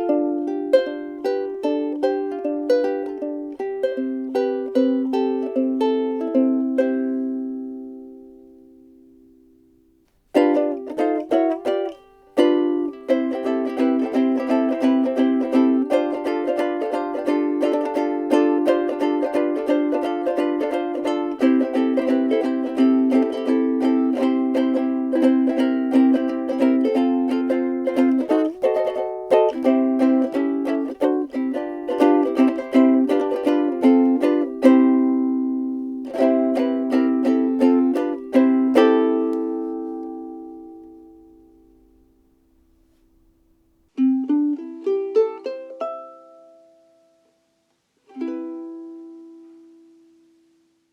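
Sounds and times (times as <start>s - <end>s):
ukulele playing chords: 0.0s - 47.4s, 48.0s - 50.3s.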